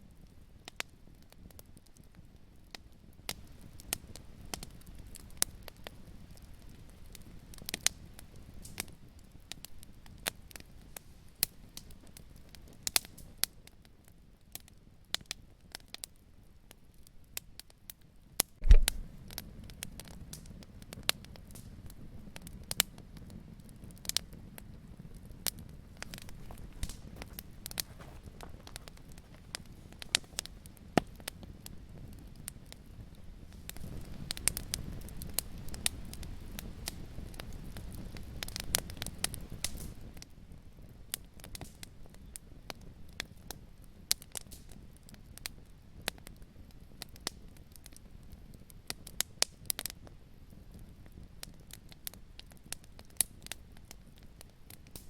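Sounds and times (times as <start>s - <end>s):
wood fire crackling: 0.1s - 55.0s
fire popping: 0.6s - 13.4s, 18.6s - 55.0s
deep thump: 18.6s - 19.1s.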